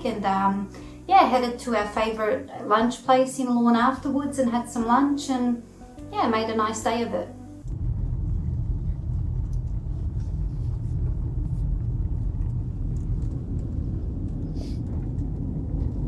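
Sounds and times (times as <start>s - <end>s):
car interior road and engine rumble: 7.6s - 16.0s.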